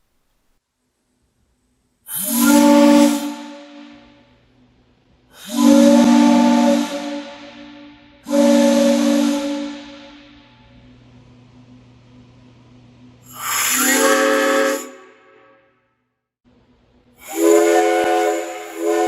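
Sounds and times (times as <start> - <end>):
steam whistle chord blasts: 2.1 - 4.4, 5.3 - 10.8, 13.2 - 15.8, 17.2 - 19.0.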